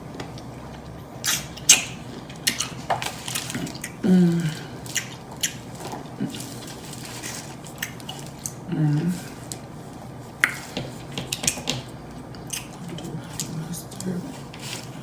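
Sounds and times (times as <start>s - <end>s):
wet lip smacking and chewing: 0.8s - 6.7s, 7.6s - 8.6s, 12.3s - 13.0s.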